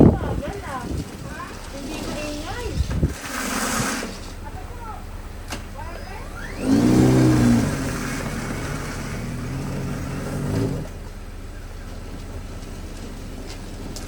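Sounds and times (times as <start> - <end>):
engine running: 0.0 - 14.0.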